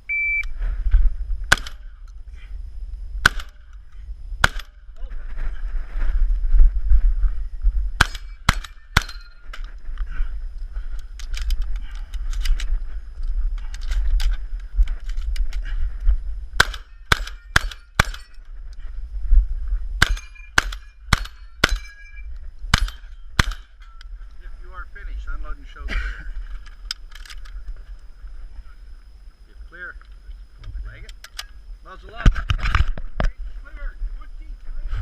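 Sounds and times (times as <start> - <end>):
steady low rumble: 0.0 - 35.0
shotgun shots: 1.5 - 1.9, 3.2 - 3.7, 4.4 - 4.8, 8.0 - 9.3, 16.6 - 18.3, 20.0 - 21.9, 22.7 - 23.8.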